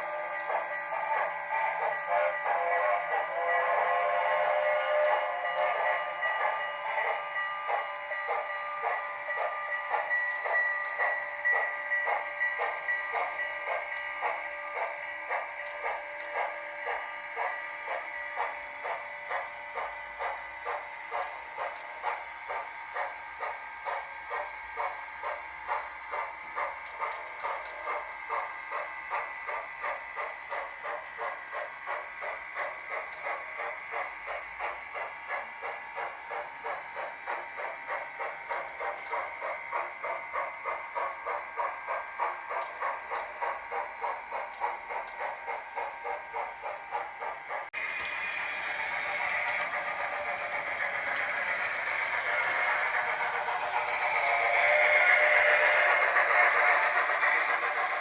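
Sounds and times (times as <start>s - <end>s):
model steam locomotive chuffs: 0.0s - 58.0s.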